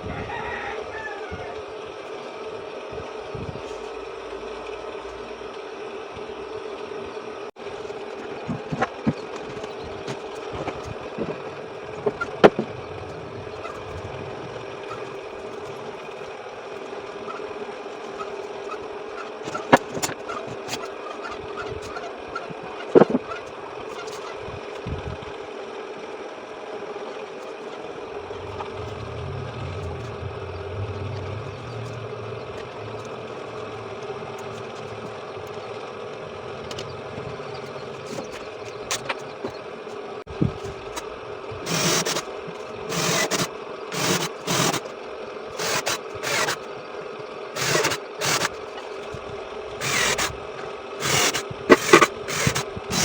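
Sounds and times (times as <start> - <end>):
steady hum: 0.0 - 23.7, 27.5 - 46.9, 47.5 - 53.0
low rumble: 11.2 - 16.2, 27.9 - 38.8
tools clicking and knocking: 51.0 - 53.0.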